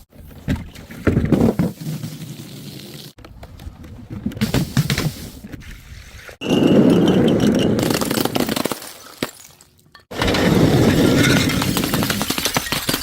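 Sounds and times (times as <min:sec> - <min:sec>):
glass breaking: 0:11.1 - 0:13.0.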